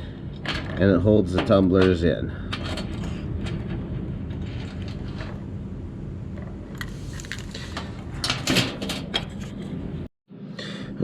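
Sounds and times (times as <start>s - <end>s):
steady low hum: 0.0s - 11.0s
lock cylinder clicks and scrapes: 6.8s - 8.4s.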